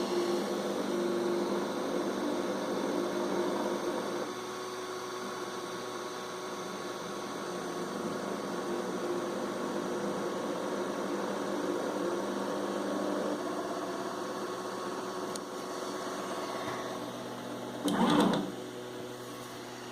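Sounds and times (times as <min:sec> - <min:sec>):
motor rattle: 0:17.8 - 0:18.6.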